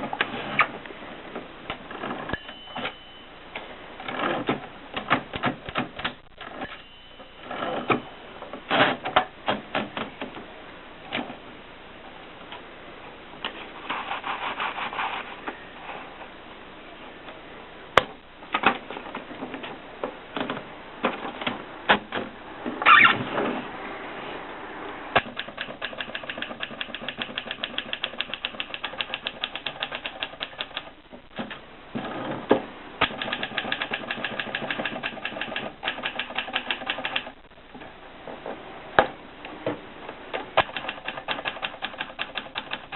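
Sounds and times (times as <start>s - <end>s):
typewriter keys clacking: 25.2s - 30.9s, 33.0s - 37.4s, 40.6s - 42.9s.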